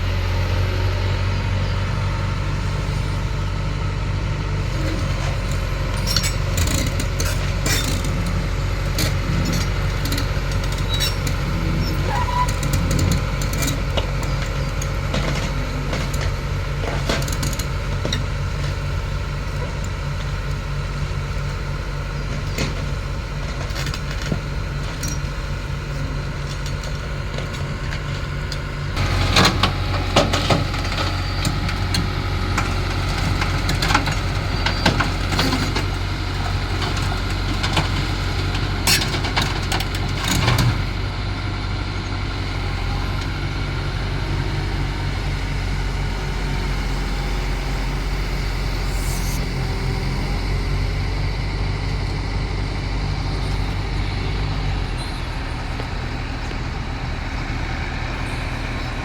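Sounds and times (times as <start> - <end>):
diesel engine running: 0.0 - 59.0.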